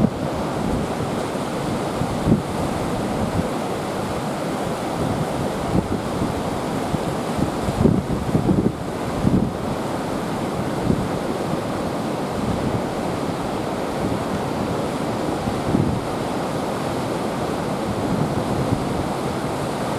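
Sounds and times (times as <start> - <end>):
wind buffeting microphone: 0.0 - 9.8
surf waves breaking: 0.0 - 19.9.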